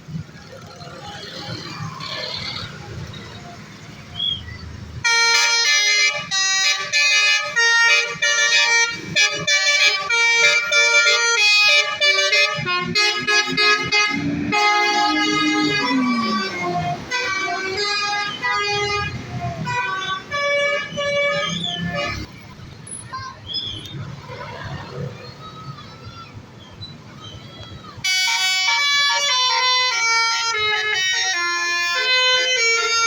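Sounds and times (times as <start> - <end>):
multi-tone bus horn melody: 5.0 - 22.3, 28.0 - 33.0.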